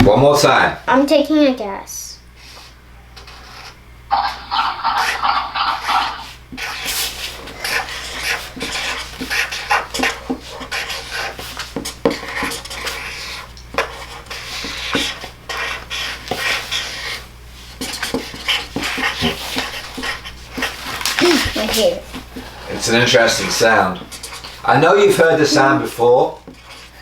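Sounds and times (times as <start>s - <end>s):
dog lapping water: 4.1s - 6.3s.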